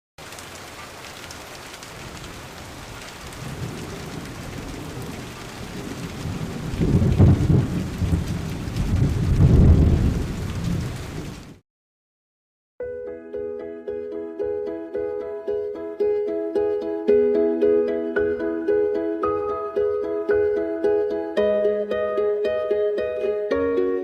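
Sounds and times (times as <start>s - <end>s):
steady rain: 0.2s - 11.6s
rolling thunder: 2.0s - 11.6s.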